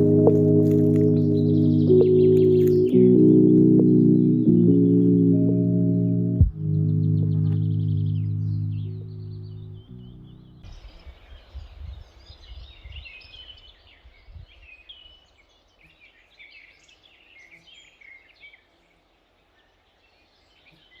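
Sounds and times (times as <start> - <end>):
low rumble: 0.0 - 10.6.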